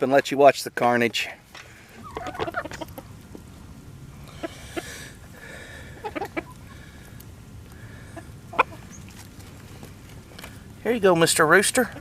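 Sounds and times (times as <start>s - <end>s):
chickens clucking: 1.7s - 3.6s, 4.2s - 10.5s, 11.8s - 12.0s.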